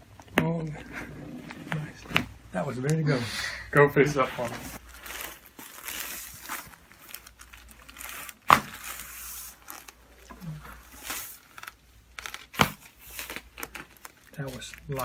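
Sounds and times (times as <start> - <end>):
rustling on treatment table: 4.0 - 15.0.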